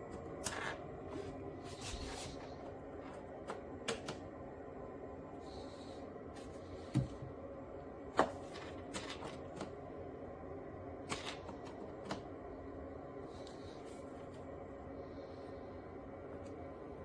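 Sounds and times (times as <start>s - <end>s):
background hum: 0.0s - 17.0s.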